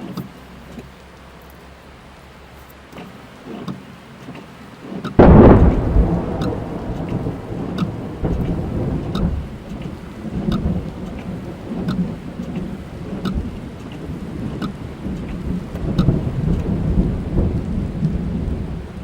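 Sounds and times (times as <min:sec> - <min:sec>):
raindrops ticking on car: 0:00.0 - 0:19.0
thunderclap rumbling: 0:05.2 - 0:19.0.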